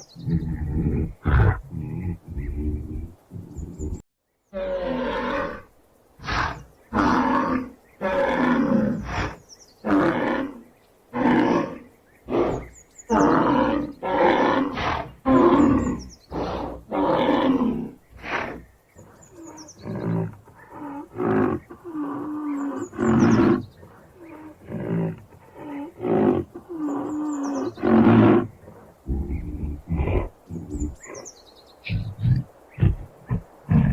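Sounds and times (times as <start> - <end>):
rhinoceros calling: 0.0 - 33.9.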